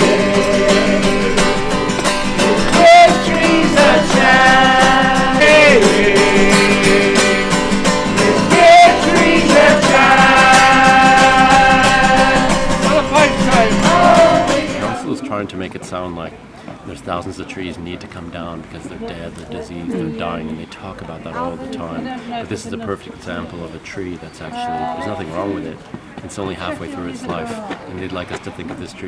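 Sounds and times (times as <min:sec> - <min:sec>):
guitar with sliding notes: 0:00.0 - 0:15.2.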